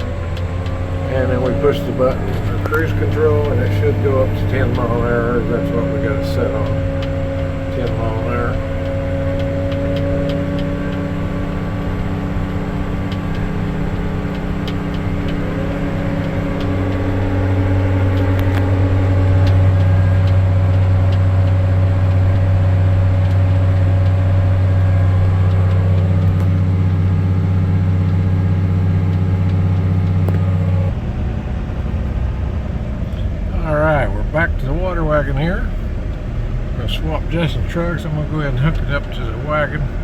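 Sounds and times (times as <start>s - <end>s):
crop sprayer engine running: 0.0s - 30.9s.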